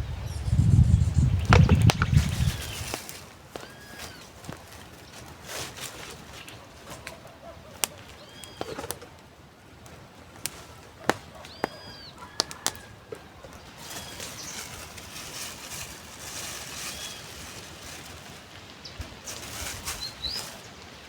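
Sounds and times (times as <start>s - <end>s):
birds whistling: 0.0s - 3.0s, 8.2s - 8.9s, 11.3s - 12.4s, 13.5s - 14.8s, 19.6s - 20.8s
faint outdoor background: 0.0s - 21.0s.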